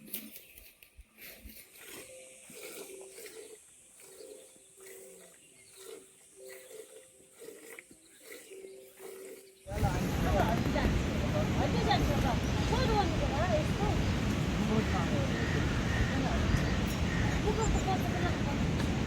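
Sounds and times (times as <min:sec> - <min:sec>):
birds cooing: 0:02.1 - 0:19.0.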